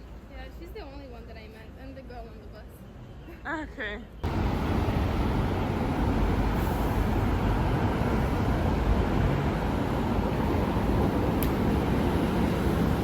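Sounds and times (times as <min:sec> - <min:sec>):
vehicle rumble: 0:04.2 - 0:13.0.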